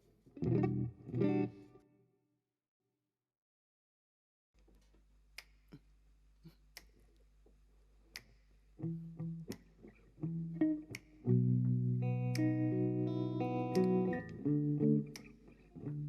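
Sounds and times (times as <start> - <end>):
guitar playing repeated chords: 0.4 - 1.6, 8.8 - 9.6, 10.2 - 16.0.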